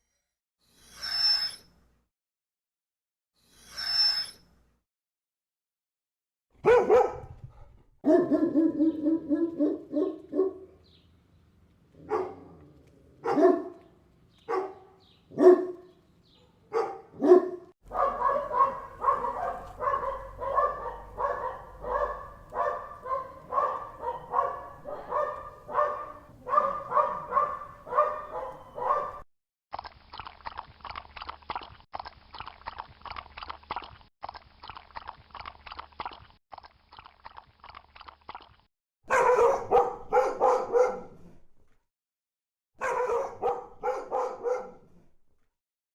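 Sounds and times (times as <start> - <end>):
dogs barking: 6.6 - 7.4, 8.1 - 10.8, 12.0 - 12.6, 13.2 - 13.9, 14.5 - 29.2, 39.1 - 41.2, 42.8 - 44.8.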